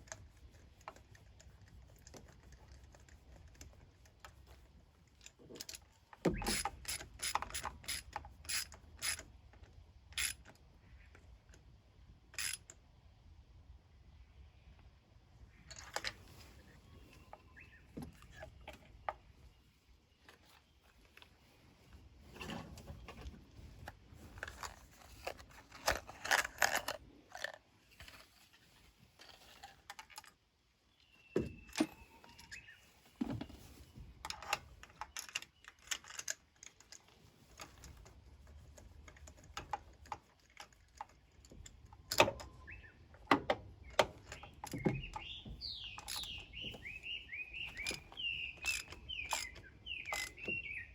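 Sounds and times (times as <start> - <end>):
bird chirping: 16.4 - 21.0, 30.9 - 33.8, 42.4 - 43.2, 43.8 - 50.9.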